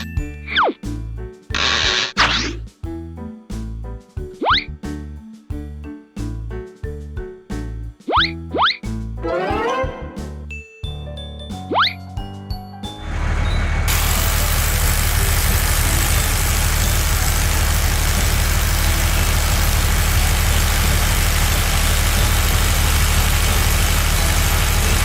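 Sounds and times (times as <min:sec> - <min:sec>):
heavy vehicle engine idling: 0:13.0 - 0:25.0
constant hiss: 0:13.9 - 0:25.0.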